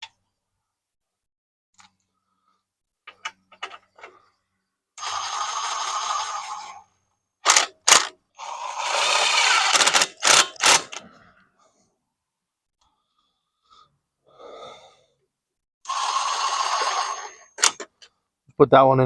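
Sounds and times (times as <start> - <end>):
rasping scrapes: 15.9 - 17.6.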